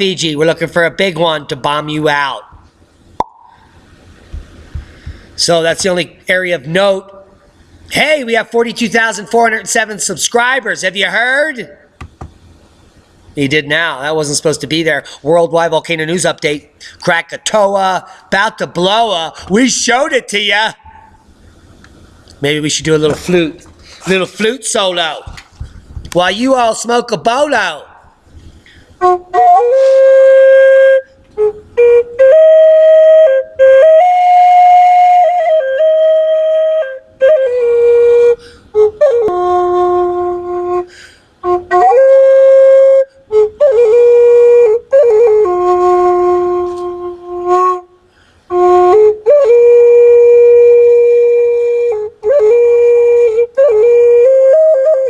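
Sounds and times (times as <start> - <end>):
solo flute melody: 29.0 - 55.0.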